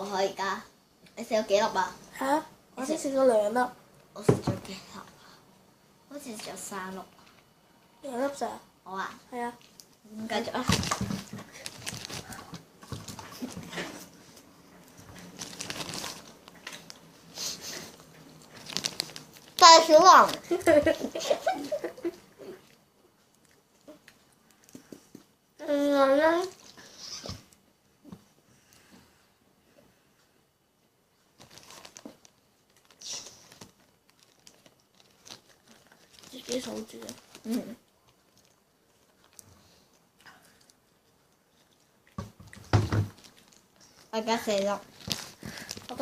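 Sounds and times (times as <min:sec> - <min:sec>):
plastic bag crinkling: 0:09.6 - 0:13.9, 0:15.0 - 0:17.0, 0:18.4 - 0:20.6, 0:31.4 - 0:39.5, 0:42.5 - 0:46.0
faint rustles: 0:10.4 - 0:19.6.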